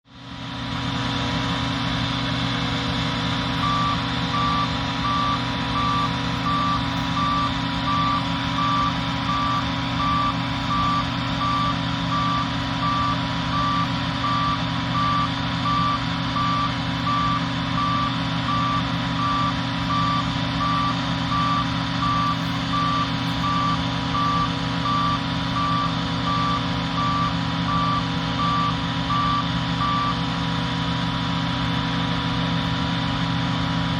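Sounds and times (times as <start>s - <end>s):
diesel engine running: 0.0s - 33.9s
reversing alarm beeps: 3.6s - 30.3s.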